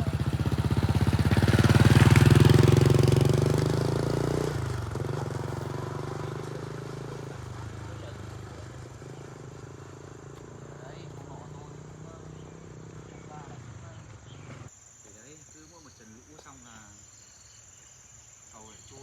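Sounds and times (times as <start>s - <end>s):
vehicle engine chugging past: 0.0s - 14.7s.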